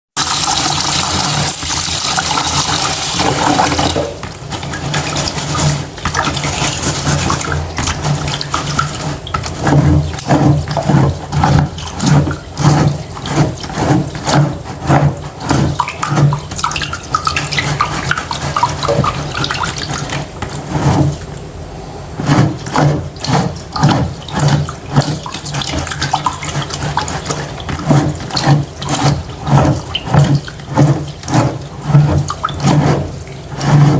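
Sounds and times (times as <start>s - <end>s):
hands swishing rice in water: 0.2s - 21.4s, 22.2s - 33.9s
tap water running into pot: 0.2s - 21.4s.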